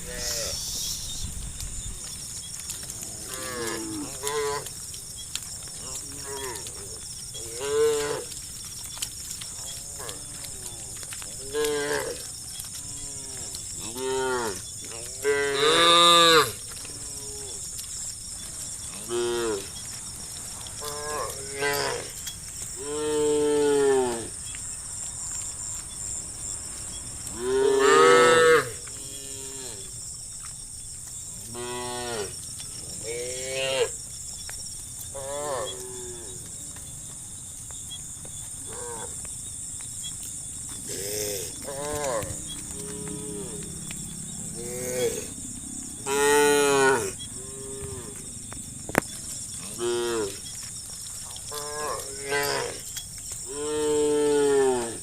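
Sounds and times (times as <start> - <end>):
high-pitched hiss: 0.0 - 2.0
cows mooing: 2.7 - 4.8, 5.8 - 8.4, 9.6 - 17.6, 18.8 - 19.7, 20.8 - 24.4, 27.3 - 29.9, 40.8 - 48.2, 49.5 - 50.6, 51.4 - 52.9.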